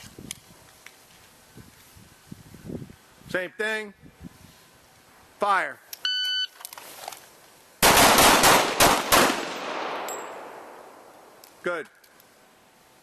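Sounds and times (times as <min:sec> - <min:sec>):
gunshot echo ringing: 0:07.8 - 0:11.2
volley of handgun shots: 0:07.8 - 0:11.4.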